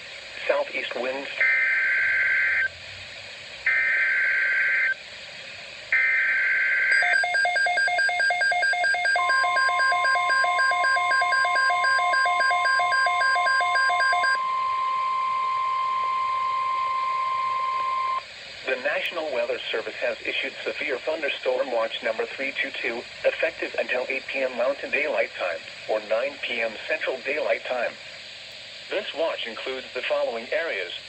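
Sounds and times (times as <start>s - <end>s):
steady warning alarm tone: 5.9s - 18.2s
pulsing electronic alarm beeps: 6.0s - 18.2s.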